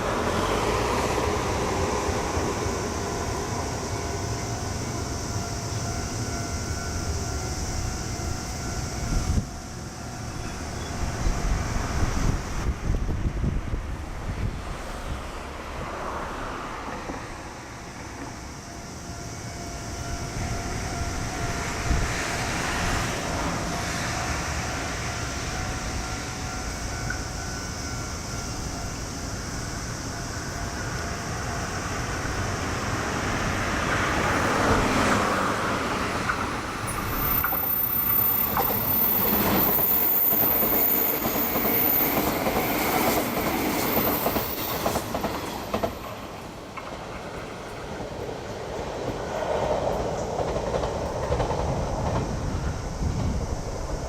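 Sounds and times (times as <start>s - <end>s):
high wheel squeal: 18.3s - 46.2s
train wheels clicking over rail joints: 30.3s - 54.0s.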